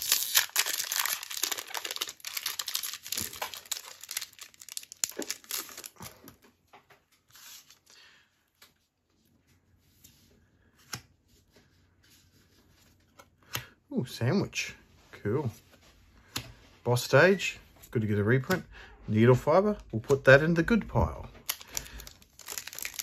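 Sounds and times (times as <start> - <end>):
foil wrapper crinkling: 0.0 - 6.3, 21.4 - 23.0
cards rustling and clicking: 0.0 - 6.4, 21.4 - 23.0.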